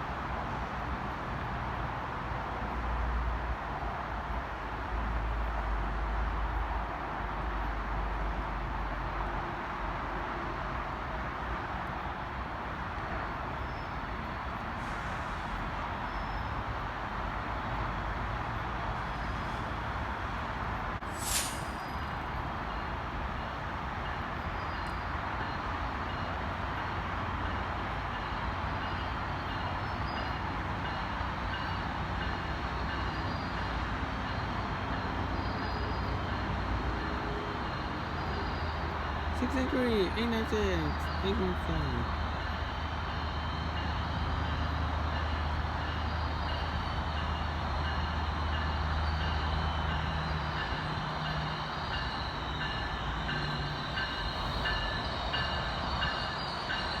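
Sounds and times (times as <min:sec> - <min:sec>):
passenger train rumbling by: 0:00.0 - 0:57.0
high squeal dropping in pitch: 0:21.1 - 0:22.1.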